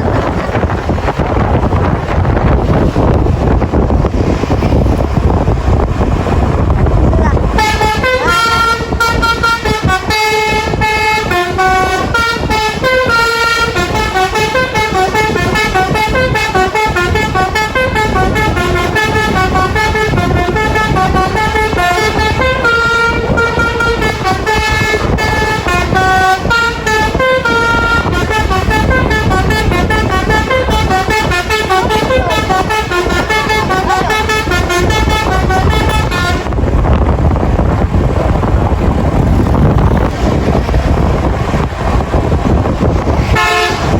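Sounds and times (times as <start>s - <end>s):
low rumble: 0.0s - 43.9s
musical air horn melody: 7.6s - 36.5s, 43.3s - 43.9s.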